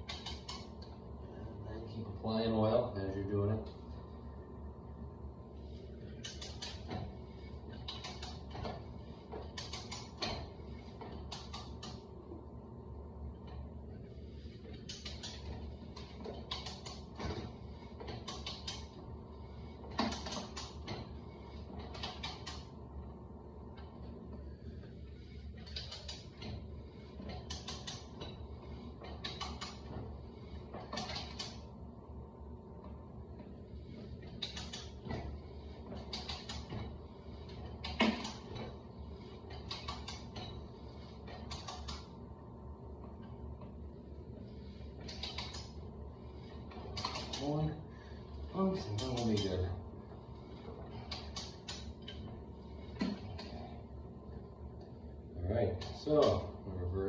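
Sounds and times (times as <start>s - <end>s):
low steady hum: 0.0s - 57.0s
ratchet clicks: 7.7s - 8.7s, 45.0s - 45.7s.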